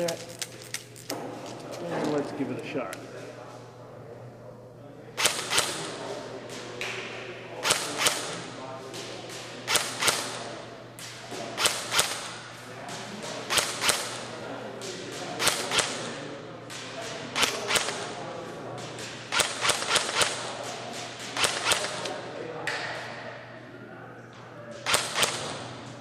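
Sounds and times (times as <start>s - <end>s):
airsoft gun shots: 5.2s - 6.0s, 7.6s - 8.4s, 9.7s - 10.5s, 11.6s - 12.4s, 13.5s - 14.3s, 19.3s - 20.5s, 21.3s - 22.1s, 24.8s - 25.6s.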